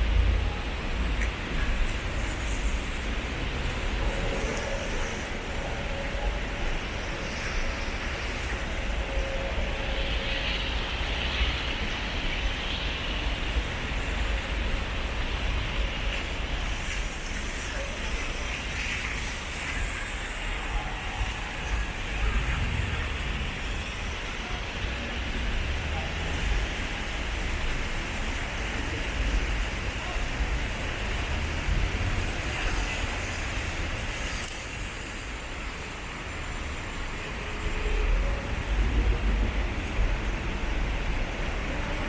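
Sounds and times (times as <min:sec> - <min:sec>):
low traffic rumble: 0:18.1 - 0:42.0.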